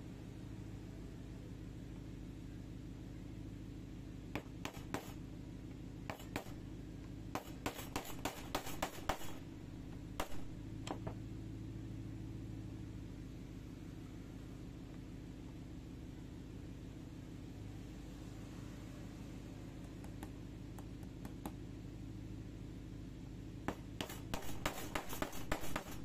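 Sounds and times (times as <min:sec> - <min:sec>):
steady low hum: 0:00.0 - 0:26.0
hard objects clicking and knocking: 0:10.2 - 0:11.2, 0:23.7 - 0:26.0.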